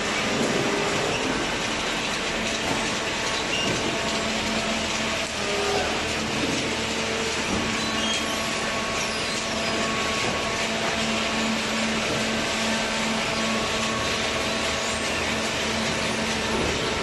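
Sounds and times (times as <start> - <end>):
motor and pump droning: 0.0 - 17.0.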